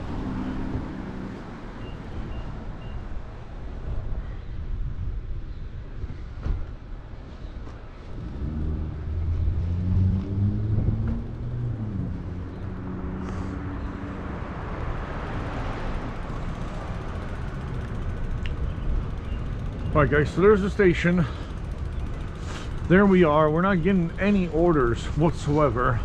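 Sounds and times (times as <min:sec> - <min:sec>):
vehicle engine hum: 0:06.0 - 0:26.0.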